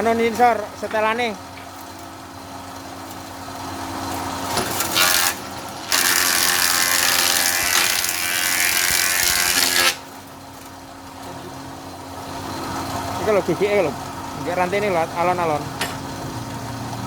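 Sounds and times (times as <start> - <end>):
planer cutting wood: 4.4 - 10.1.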